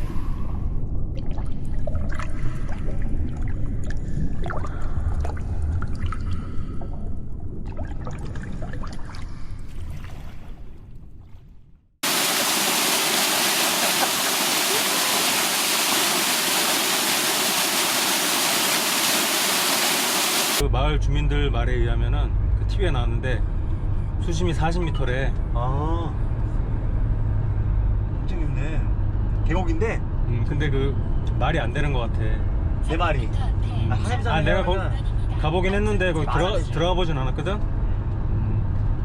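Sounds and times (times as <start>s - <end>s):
low rumbling noise: 0.0s - 8.5s
stream water pouring over rocks: 12.0s - 20.6s.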